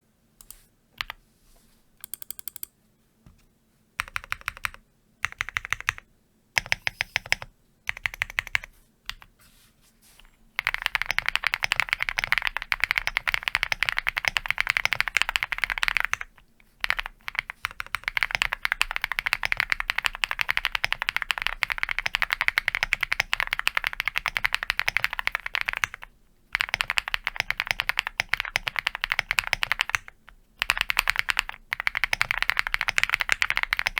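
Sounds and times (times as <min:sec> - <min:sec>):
mechanical keyboard typing: 0:02.0 - 0:02.7, 0:04.0 - 0:09.3, 0:10.6 - 0:33.9.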